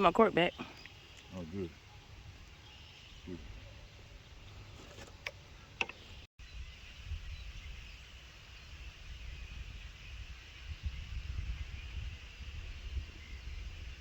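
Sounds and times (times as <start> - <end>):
wind rumbling on microphone: 5.4 - 14.0.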